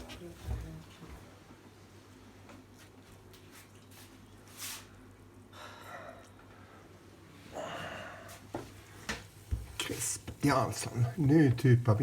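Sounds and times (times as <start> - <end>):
person breathing: 5.5 - 8.5.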